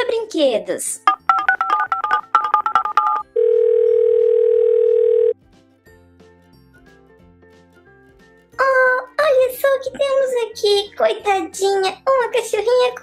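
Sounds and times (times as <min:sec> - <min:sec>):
faint background music: 0:00.0 - 0:13.0
long steady phone tone: 0:01.1 - 0:05.4
telephone keypad beeps: 0:01.1 - 0:05.4.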